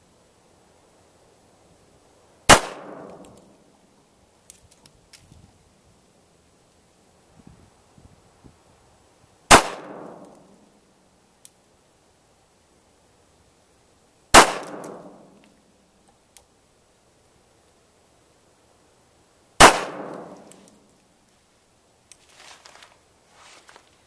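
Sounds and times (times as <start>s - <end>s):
pistol shots with echo: 2.5s - 3.5s, 9.5s - 10.4s, 14.3s - 15.4s, 19.6s - 20.6s
faint rustling: 22.1s - 24.0s.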